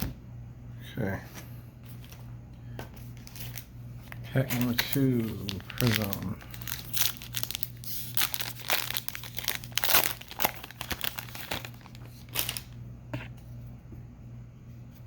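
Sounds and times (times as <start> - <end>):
low steady hum: 0.0 - 15.0
foil wrapper crinkling and tearing: 3.2 - 12.8.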